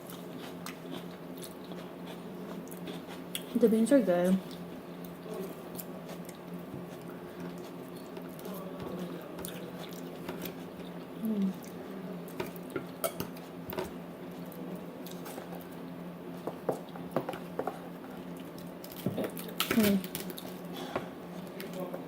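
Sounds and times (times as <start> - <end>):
chewing: 0.0 - 3.6, 4.4 - 12.7
steady low hum: 0.0 - 22.0.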